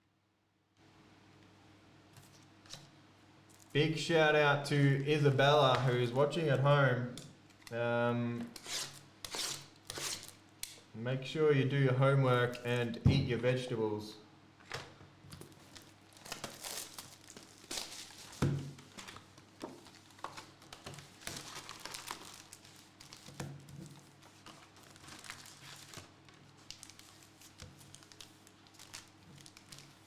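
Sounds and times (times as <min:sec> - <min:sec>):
plastic wrapping crinkling and tearing: 0:15.3 - 0:30.0.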